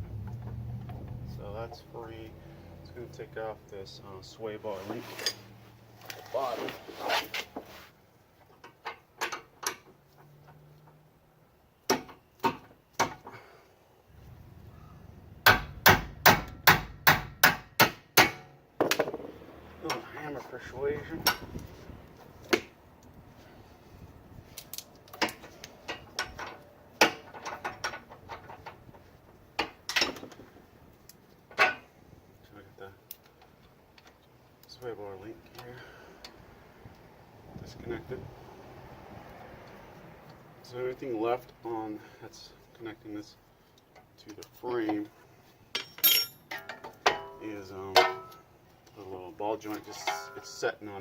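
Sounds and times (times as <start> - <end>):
sharp metal knocks: 15.4 - 19.4, 45.8 - 47.4, 48.0 - 48.4
hand tools clinking on metal: 45.7 - 48.5, 49.6 - 50.7.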